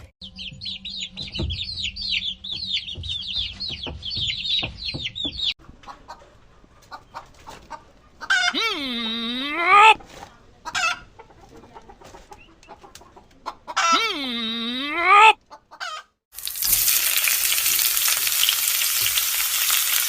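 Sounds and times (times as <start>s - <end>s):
food sizzling while frying: 16.3s - 20.0s.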